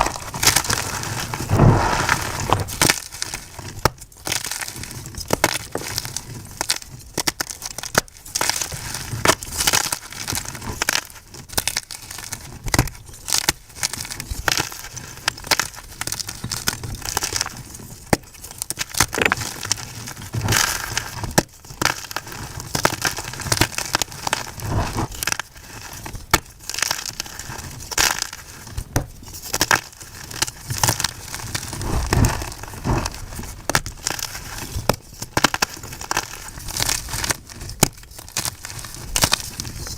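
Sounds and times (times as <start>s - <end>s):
chalk being crushed: 0.0s - 6.8s, 18.8s - 39.9s.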